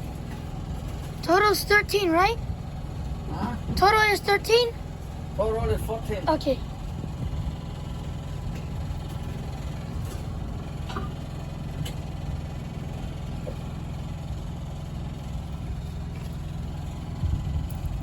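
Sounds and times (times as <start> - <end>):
truck engine humming: 0.0 - 18.0.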